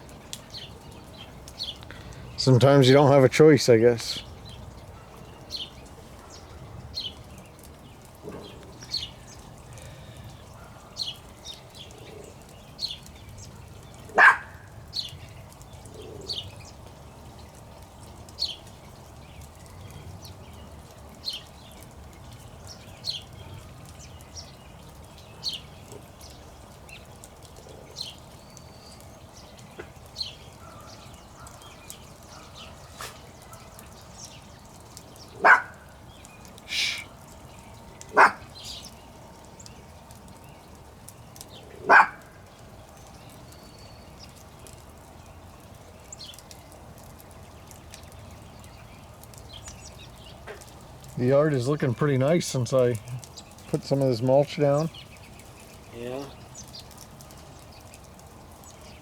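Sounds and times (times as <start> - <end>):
dog barking: 14.2 - 14.6, 35.4 - 35.8, 38.1 - 38.5, 41.8 - 42.3.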